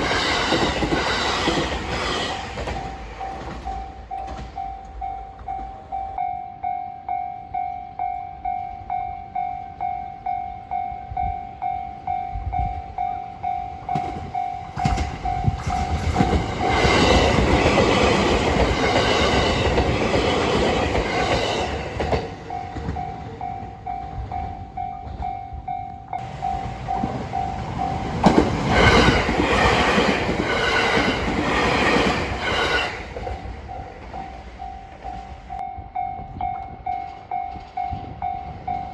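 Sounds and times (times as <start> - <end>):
trains passing: 0.0 - 38.9
wheel clacks over rail joints: 26.2 - 35.6.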